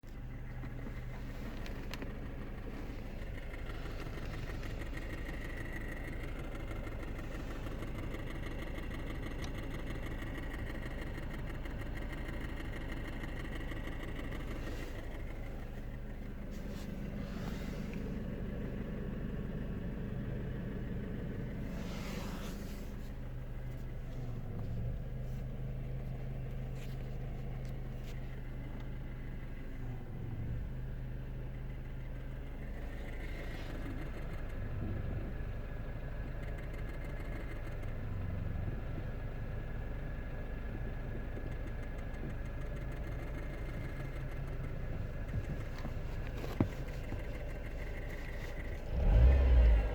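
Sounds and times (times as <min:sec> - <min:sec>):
car engine idling: 0:00.0 - 0:49.9.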